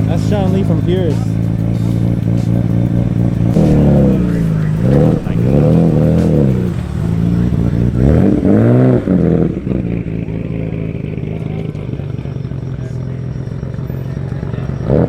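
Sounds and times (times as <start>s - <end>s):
car engine idling and revving: 0.0s - 15.0s.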